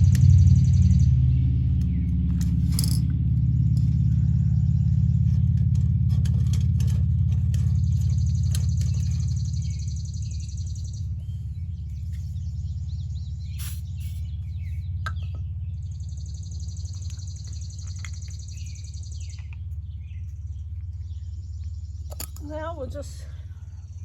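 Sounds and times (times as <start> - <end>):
birds chirping: 0.0 - 24.0
pool pump motor humming: 13.3 - 15.4.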